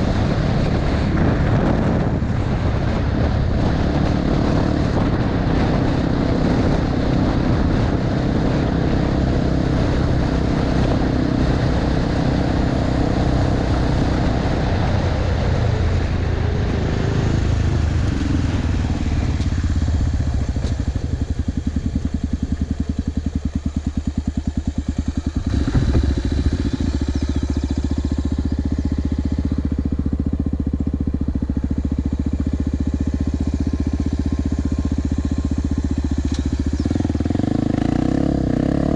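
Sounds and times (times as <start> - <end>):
wind rushing: 0.0 - 9.3, 25.2 - 38.3
gravel rushing under tyres: 0.0 - 37.7
motorcycle engine: 0.0 - 38.9.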